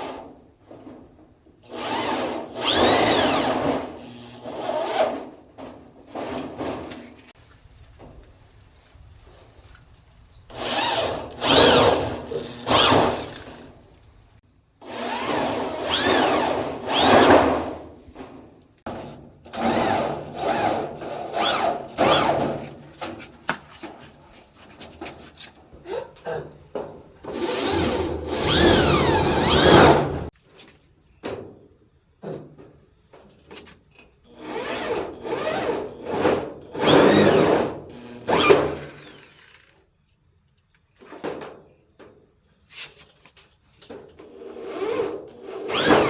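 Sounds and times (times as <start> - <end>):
power tool cutting wood: 1.7 - 5.2, 10.5 - 13.7, 14.8 - 17.7, 27.3 - 30.3, 34.3 - 39.6, 44.6 - 46.0.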